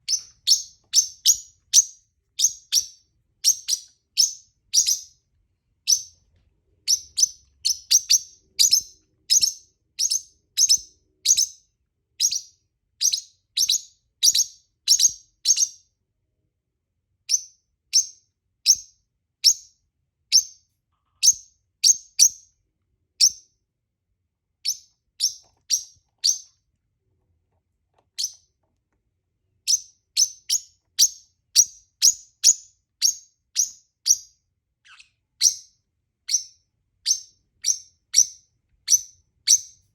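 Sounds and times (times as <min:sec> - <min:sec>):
parrot chirping: 0:00.0 - 0:05.2, 0:05.8 - 0:06.2, 0:06.8 - 0:15.8, 0:17.3 - 0:20.6, 0:21.2 - 0:22.5, 0:23.2 - 0:23.5, 0:24.6 - 0:26.6, 0:28.0 - 0:28.5, 0:29.6 - 0:39.9.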